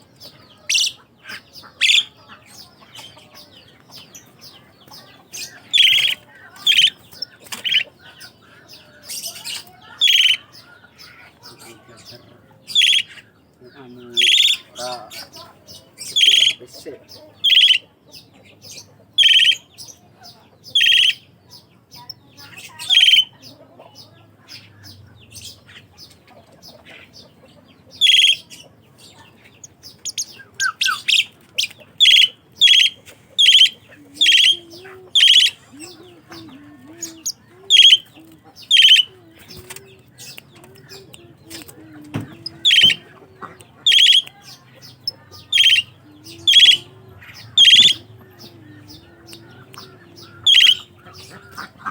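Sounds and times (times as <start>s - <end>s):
starling calling harshly: 0.6s - 2.2s, 5.3s - 8.2s, 9.0s - 11.2s, 12.7s - 13.2s, 14.2s - 15.4s, 16.0s - 16.6s, 17.4s - 17.9s, 19.2s - 19.6s, 20.8s - 21.2s, 22.4s - 23.3s, 28.0s - 28.6s, 29.8s - 39.6s, 42.2s - 51.9s.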